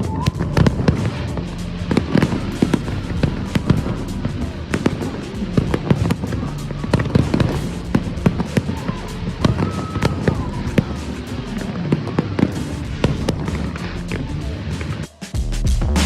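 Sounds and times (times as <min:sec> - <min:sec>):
fireworks bangs and crackles: 0:00.0 - 0:15.1
music playing: 0:00.0 - 0:16.0.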